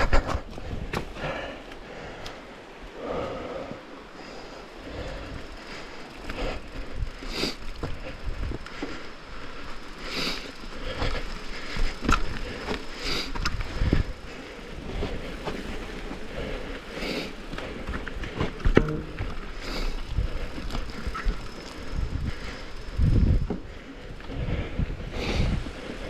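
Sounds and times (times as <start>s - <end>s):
bike tyres on dirt and rock: 0.0s - 26.0s
bike chain and frame rattling: 5.0s - 24.2s.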